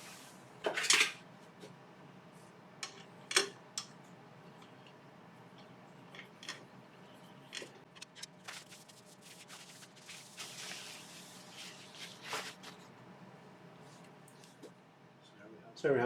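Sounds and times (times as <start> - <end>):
soft rustle: 8.2 - 12.9.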